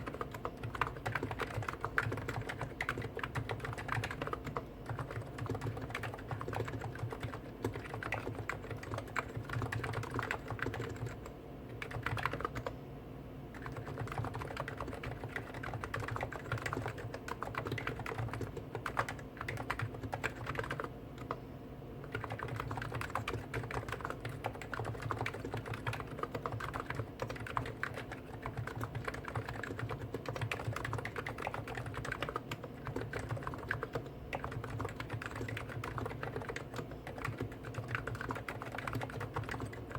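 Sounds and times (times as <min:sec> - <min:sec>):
fast typing on keyboards: 0:00.0 - 0:12.7, 0:13.5 - 0:21.4, 0:22.0 - 0:39.9.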